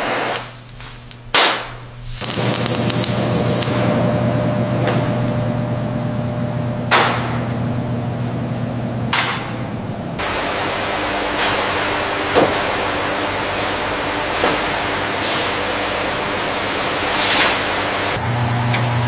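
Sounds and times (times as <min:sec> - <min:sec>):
factory machinery running: 0:00.0 - 0:19.0
humming drone: 0:02.2 - 0:19.0
broad hiss: 0:10.2 - 0:18.2.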